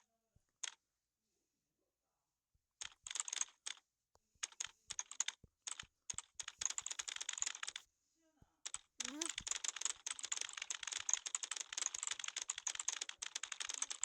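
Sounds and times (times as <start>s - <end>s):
computer keyboard typing: 2.8s - 3.8s, 4.4s - 7.8s, 8.7s - 14.0s.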